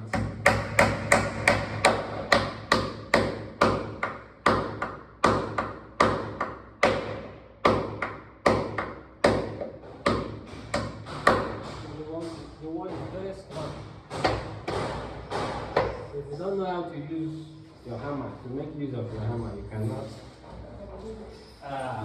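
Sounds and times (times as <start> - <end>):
hammer striking nail: 0.0 - 16.1.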